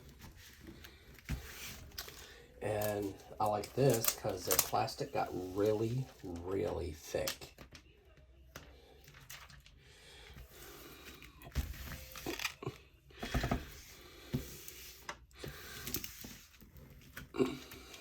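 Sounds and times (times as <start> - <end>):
plastic packaging crinkling: 1.8 - 7.7.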